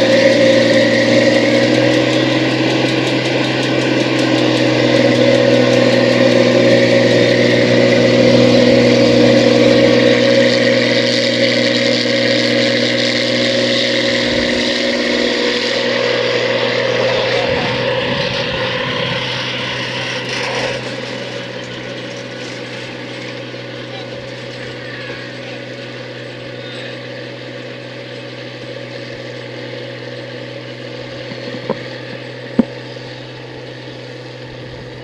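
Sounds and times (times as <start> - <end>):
combine harvester running: 0.0 - 35.0.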